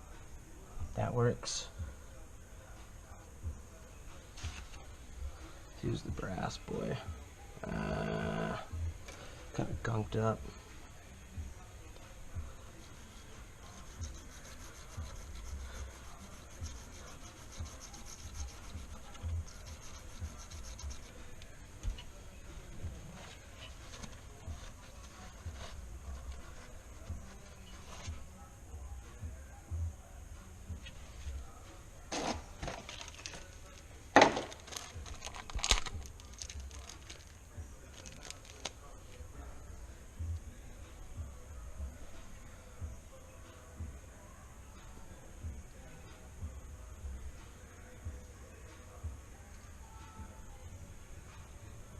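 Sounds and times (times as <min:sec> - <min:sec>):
wire brush scrubbing: 0:13.0 - 0:21.4.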